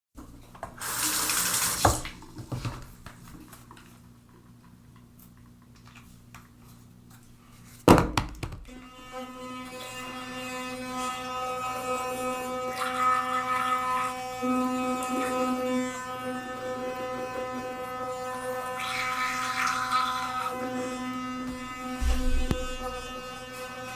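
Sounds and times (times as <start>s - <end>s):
knocks: 7.9s - 8.7s, 22.0s - 23.2s
electric toothbrush motor buzzing: 8.7s - 23.9s
toothbrush scrubbing teeth: 9.6s - 23.9s.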